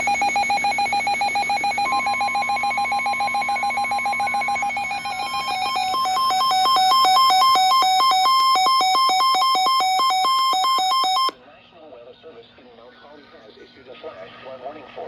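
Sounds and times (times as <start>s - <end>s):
rapid electronic beeping: 0.0s - 11.3s
steady warning tone: 0.0s - 11.3s.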